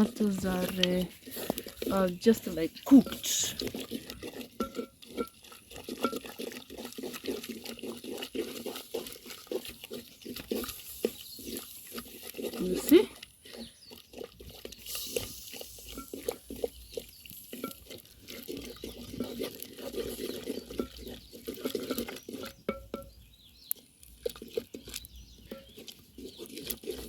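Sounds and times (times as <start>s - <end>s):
scraping and knocks against pot: 0.0s - 27.0s
stick stirring vegetables in pot: 0.0s - 27.0s.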